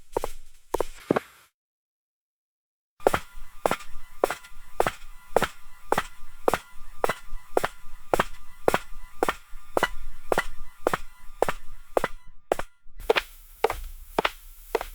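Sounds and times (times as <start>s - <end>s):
high heels clicking on marble: 0.1s - 1.1s, 10.3s - 14.9s.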